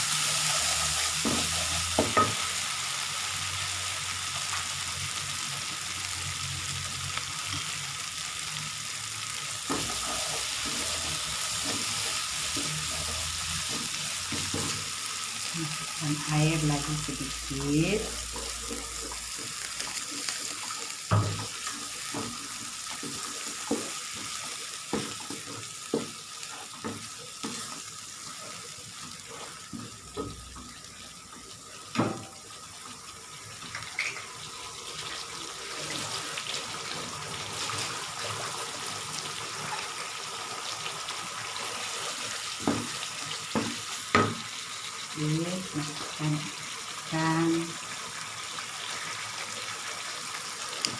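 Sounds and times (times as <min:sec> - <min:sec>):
curry bubbling and sizzling: 0:00.0 - 0:50.9
spatula knocking pan: 0:21.1 - 0:26.2, 0:26.8 - 0:27.7.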